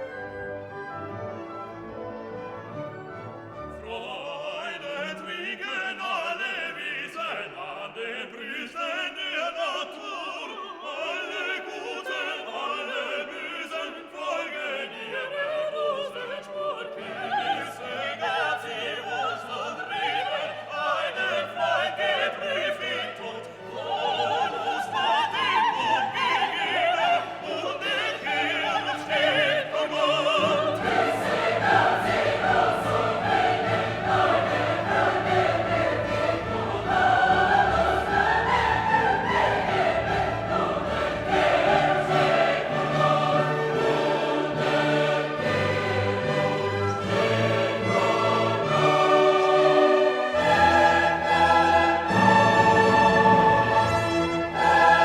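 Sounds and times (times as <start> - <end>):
choral music with orchestra: 0.0 - 55.0.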